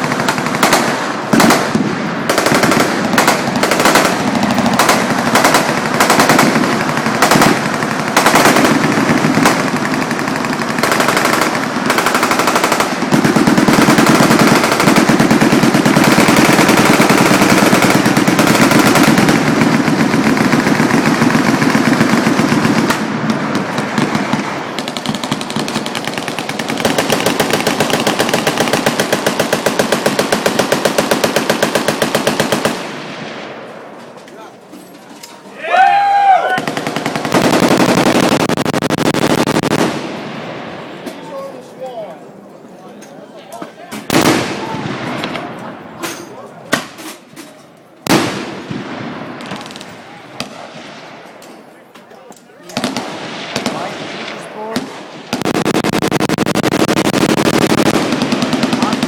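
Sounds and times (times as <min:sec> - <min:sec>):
automatic machine-gun fire: 0:00.0 - 0:33.0, 0:36.6 - 0:40.2, 0:44.1 - 0:45.4, 0:48.1 - 0:50.5, 0:52.8 - 0:59.0.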